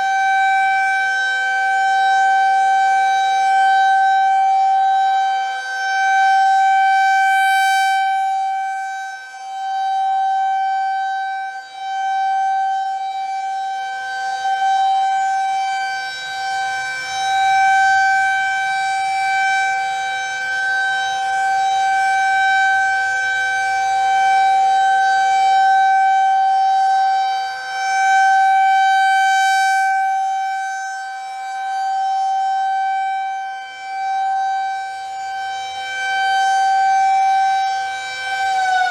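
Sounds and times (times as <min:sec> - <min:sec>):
rotating tornado siren tone: 0:27.9 - 0:38.9.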